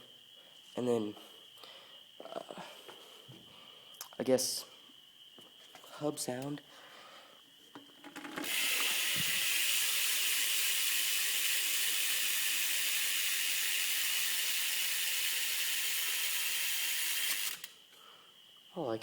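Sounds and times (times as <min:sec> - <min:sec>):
bike hub ratcheting buzz: 0:08.2 - 0:17.9.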